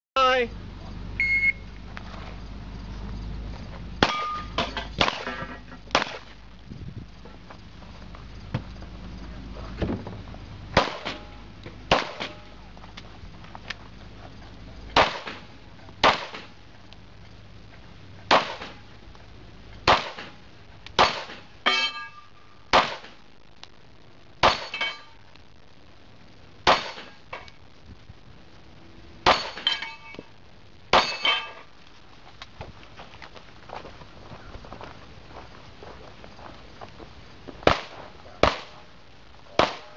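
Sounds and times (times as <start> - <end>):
steel targets ringing: 4.0 - 5.7, 21.0 - 22.7, 24.4 - 25.2, 29.2 - 30.3, 30.9 - 31.7
pistol shots: 5.0 - 5.3, 5.9 - 6.3, 10.8 - 11.2, 11.9 - 12.4, 15.0 - 16.6, 18.3 - 18.8, 19.8 - 20.4, 21.0 - 21.4, 22.7 - 23.2, 26.6 - 27.2, 37.6 - 38.8, 39.5 - 39.9.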